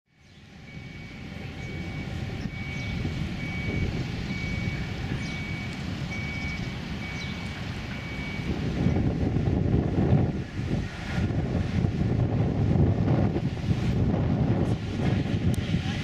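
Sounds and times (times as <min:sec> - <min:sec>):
vehicle reversing alarm beeping: 0:00.2 - 0:09.2
low rumbling background noise: 0:00.2 - 0:16.0.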